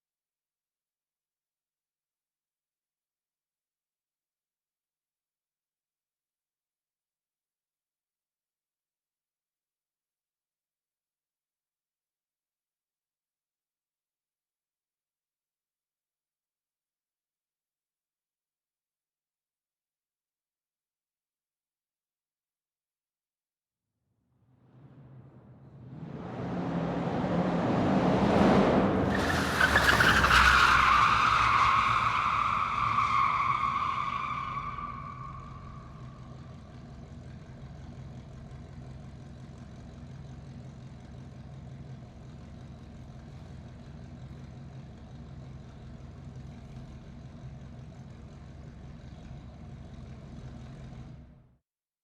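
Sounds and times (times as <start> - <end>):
car engine surging and idling: 24.5 - 30.4, 34.4 - 51.6.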